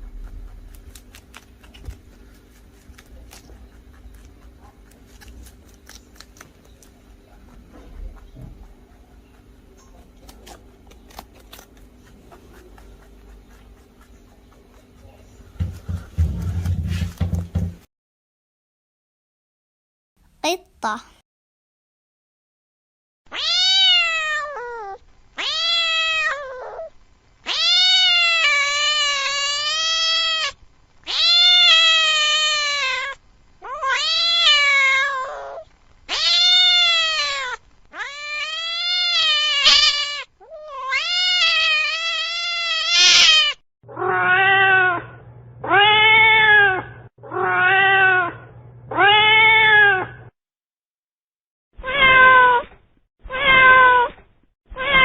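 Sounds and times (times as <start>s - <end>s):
steady low hum: 0.0s - 17.8s
cat meowing: 23.3s - 26.9s, 27.5s - 50.3s, 51.8s - 55.0s.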